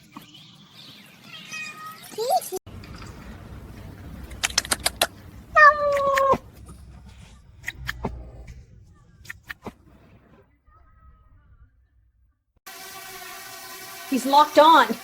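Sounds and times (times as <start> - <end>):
sharp clicks: 4.3 - 5.2
cat meowing: 5.5 - 6.4.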